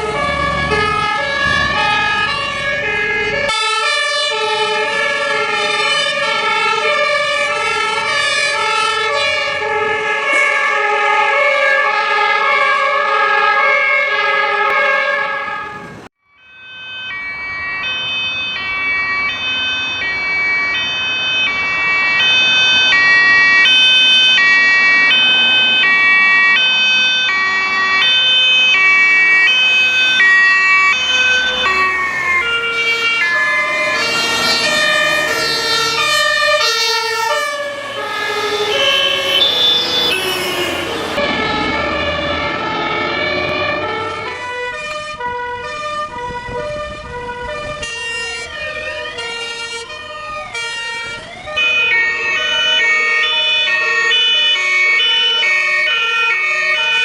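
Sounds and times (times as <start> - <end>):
fire engine two-tone siren: 0.0 - 57.0
other two-tone sirens: 0.0 - 57.0
low rumble of vehicles: 14.3 - 56.0.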